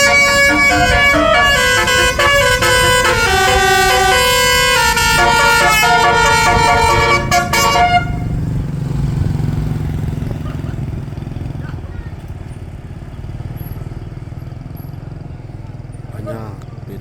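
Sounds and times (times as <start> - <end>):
tuned air horns playing melody: 0.0 - 8.4
low engine rumble: 0.0 - 17.0.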